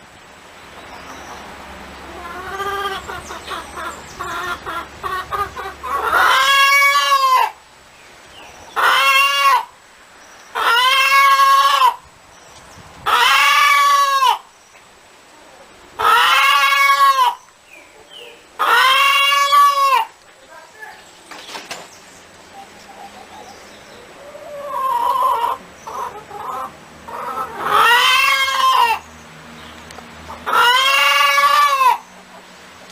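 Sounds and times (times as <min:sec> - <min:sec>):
hen cackling: 0:02.1 - 0:07.6, 0:08.7 - 0:09.8, 0:10.5 - 0:12.0, 0:13.0 - 0:14.5, 0:15.5 - 0:20.2, 0:22.4 - 0:29.1, 0:30.3 - 0:32.5.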